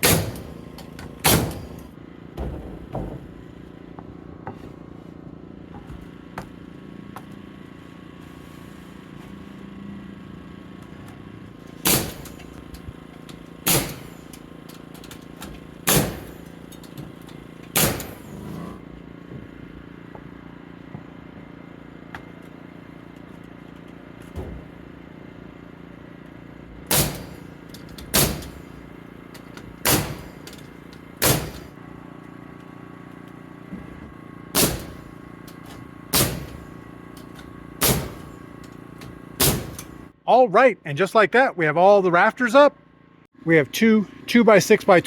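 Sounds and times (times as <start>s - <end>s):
nail gun shots into wood: 0.0s - 1.9s, 11.8s - 18.4s, 26.8s - 28.8s, 29.6s - 30.6s, 31.2s - 31.7s, 34.5s - 35.2s, 36.1s - 38.4s, 39.0s - 40.0s.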